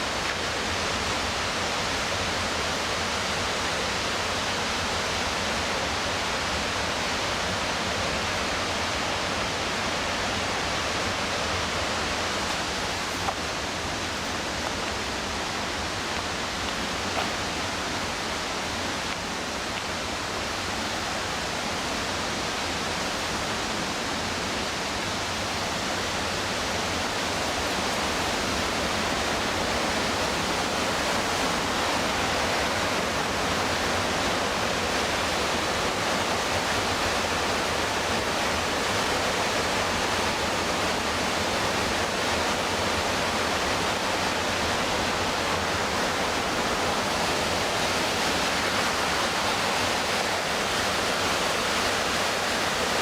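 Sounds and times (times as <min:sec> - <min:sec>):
whitewater roaring: 0:00.0 - 0:53.0.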